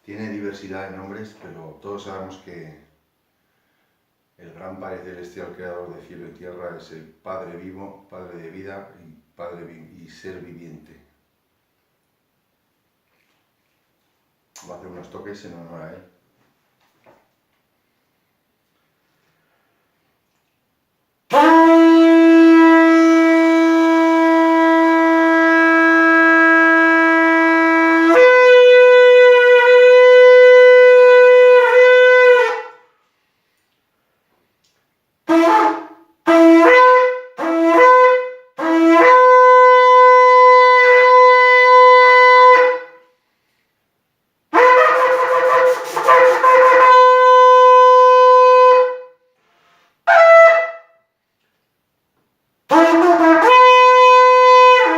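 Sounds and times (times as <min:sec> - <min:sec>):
shofar blasts: 0:21.3 - 0:33.0, 0:35.2 - 0:43.2, 0:44.5 - 0:49.4, 0:50.0 - 0:51.2, 0:52.7 - 0:54.9.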